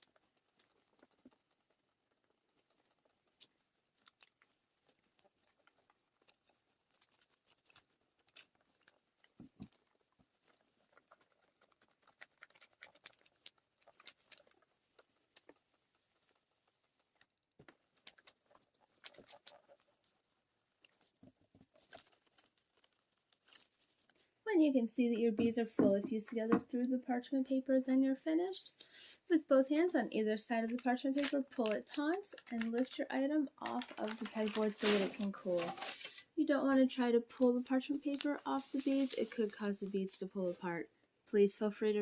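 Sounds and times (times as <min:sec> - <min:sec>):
iron rustling over paper: 0:29.0 - 0:40.6.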